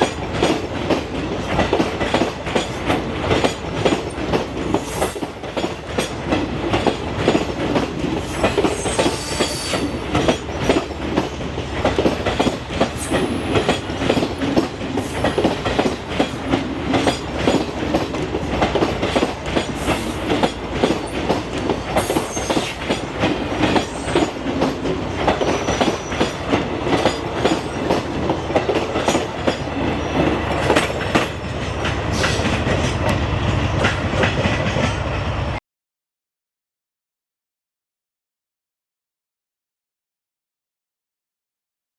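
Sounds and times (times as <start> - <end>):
train wheels clattering over rail joints: 0.0 - 35.2
wheel squealing on rail: 1.4 - 6.2, 7.2 - 33.1.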